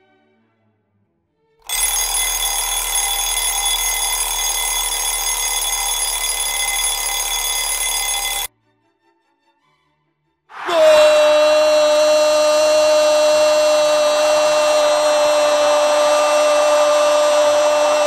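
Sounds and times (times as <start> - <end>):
harsh buzzer tone: 1.7 - 8.5.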